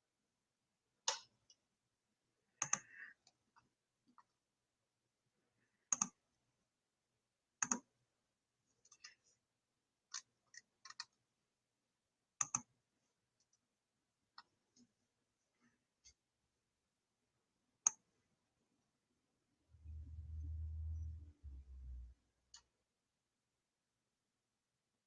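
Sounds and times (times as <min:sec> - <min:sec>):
computer mouse clicking: 0:02.6 - 0:03.4, 0:05.9 - 0:06.2, 0:07.6 - 0:07.9, 0:12.4 - 0:12.7.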